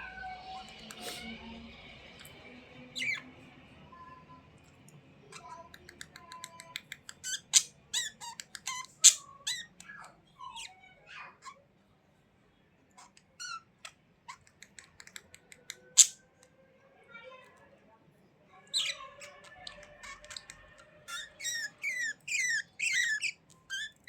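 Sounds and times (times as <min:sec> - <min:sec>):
budgerigars chirping and squawking: 0:02.2 - 0:03.3, 0:06.8 - 0:11.6, 0:13.0 - 0:16.2, 0:18.8 - 0:24.0.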